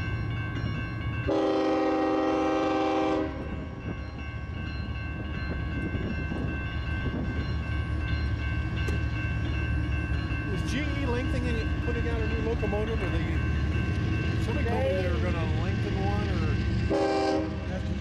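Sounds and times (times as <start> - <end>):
train running rumble and whine: 0.0 - 18.0
locomotive horn blast: 1.3 - 3.5, 16.9 - 17.8.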